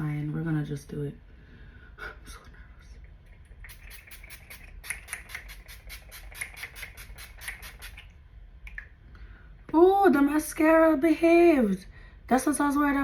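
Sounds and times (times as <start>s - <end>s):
setting spray spritzes hissing: 3.6s - 8.0s.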